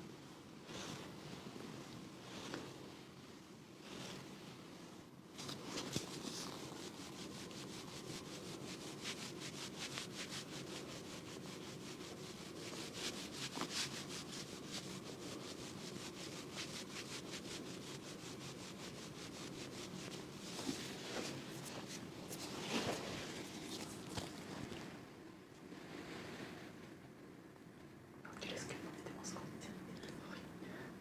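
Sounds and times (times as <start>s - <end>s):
rhythmic rubbing strokes on body: 0.2s - 24.9s.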